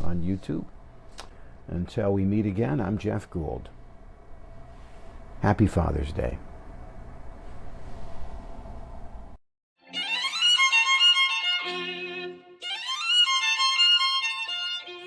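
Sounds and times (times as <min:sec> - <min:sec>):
low room hum: 0:00.0 - 0:09.4
violin music: 0:09.8 - 0:15.0.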